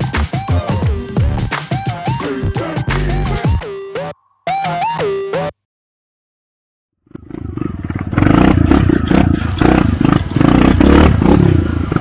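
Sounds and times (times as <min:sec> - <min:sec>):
motorcycle engine revving: 0:07.0 - 0:12.0.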